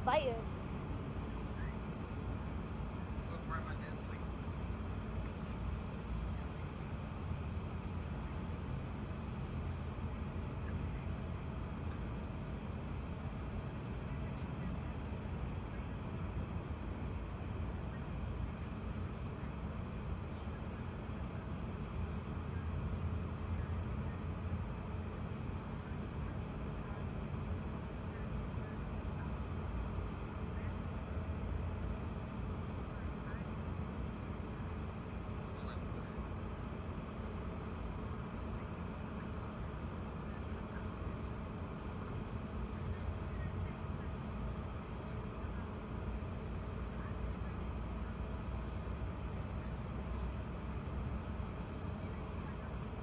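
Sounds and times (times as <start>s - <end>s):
constant low rumble: 0.0s - 53.0s
crickets trilling: 0.0s - 53.0s.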